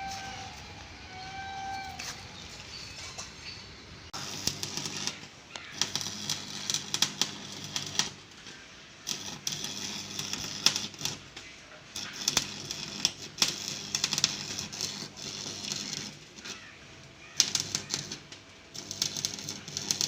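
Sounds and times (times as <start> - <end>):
welding arc crackling: 4.1 - 20.0.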